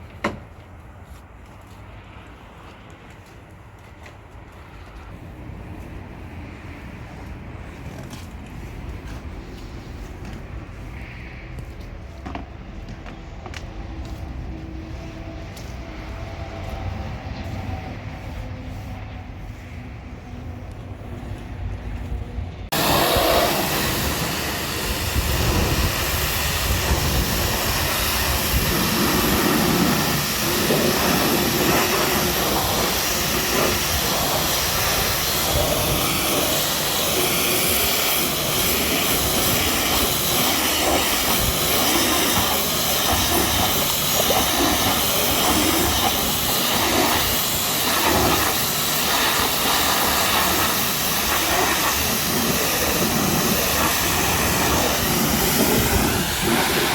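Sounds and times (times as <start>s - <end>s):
pressure washer spraying water: 22.7s - 56.9s.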